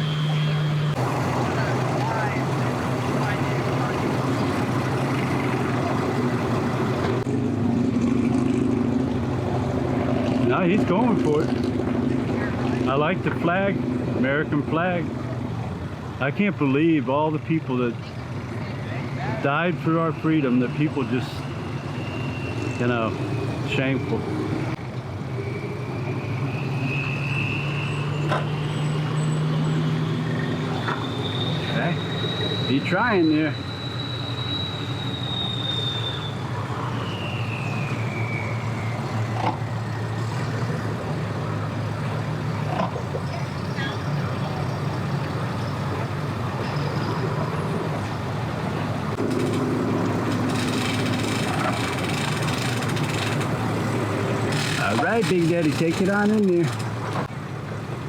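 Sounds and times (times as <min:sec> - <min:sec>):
higher engine note: 0:00.0 - 0:14.7
engine humming: 0:00.0 - 0:16.4, 0:17.6 - 0:58.0.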